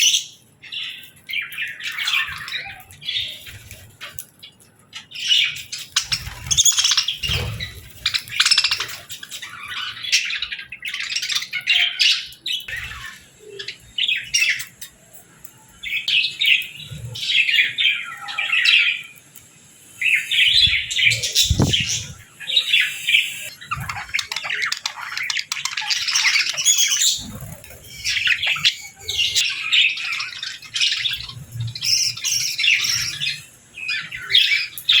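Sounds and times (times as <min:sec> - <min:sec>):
budgerigars chirping: 0:20.0 - 0:35.0.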